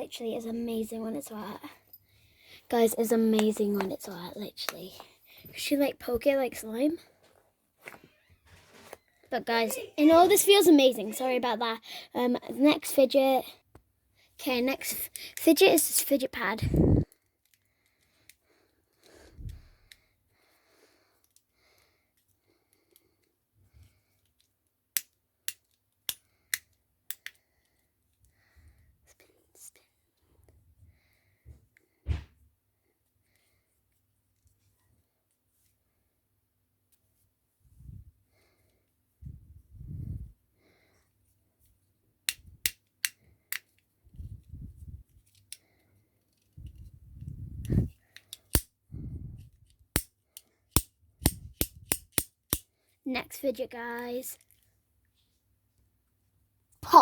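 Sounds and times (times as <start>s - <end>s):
plastic fidget pad clicks: 24.2s - 27.4s, 42.2s - 43.9s, 49.6s - 52.7s.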